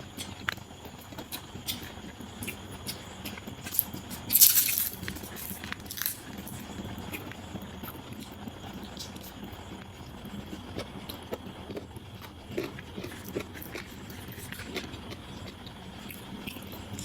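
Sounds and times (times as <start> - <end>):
chewing clicks and smacks: 0.2 - 8.4, 10.5 - 17.0
loud crackling rustle: 3.7 - 6.2.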